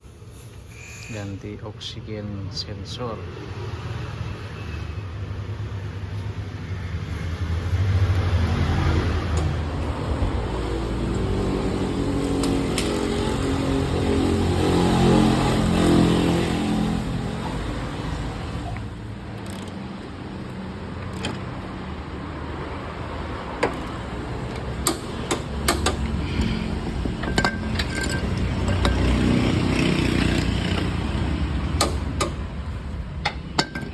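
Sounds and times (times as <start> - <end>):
car engine revving: 7.7 - 32.6.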